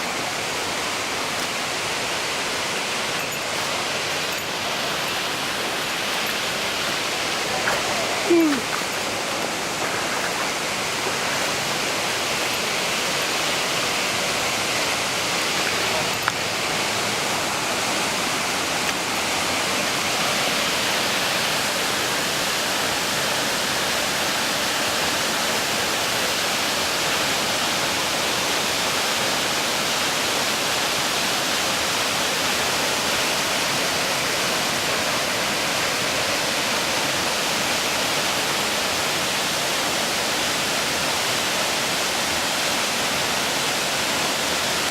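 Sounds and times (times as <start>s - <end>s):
waterfall rushing: 0.0s - 44.9s.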